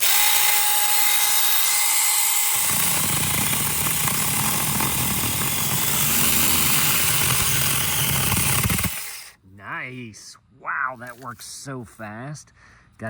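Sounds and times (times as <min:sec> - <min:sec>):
mini chainsaw motor whine: 0:00.0 - 0:09.3
chainsaw cutting through wood: 0:00.0 - 0:09.4.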